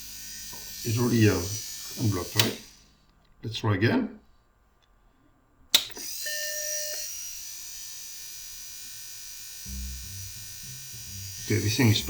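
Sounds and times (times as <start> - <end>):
floppy drive eject motor running: 0.0 - 2.9
sharp click: 2.4 - 2.6, 5.7 - 6.1.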